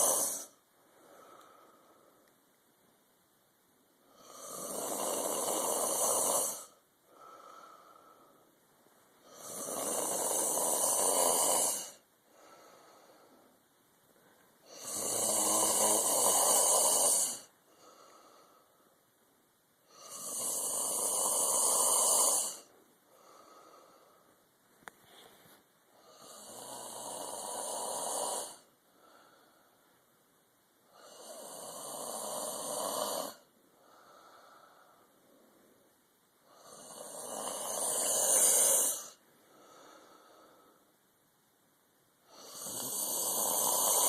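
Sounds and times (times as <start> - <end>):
man snoring: 0.0 - 1.8, 4.0 - 8.4, 9.2 - 13.3, 14.6 - 18.6, 19.8 - 24.2, 25.9 - 29.6, 30.8 - 35.1, 36.4 - 40.8, 42.2 - 44.0
soft breath: 0.0 - 2.6, 4.0 - 15.0, 16.5 - 20.3, 21.8 - 31.4, 33.2 - 41.3.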